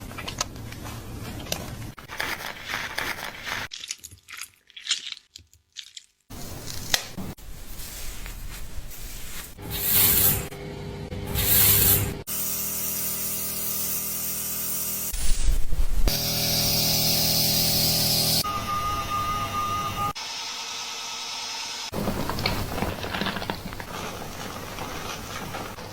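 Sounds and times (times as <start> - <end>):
hissing water spray: 9.6 - 10.5.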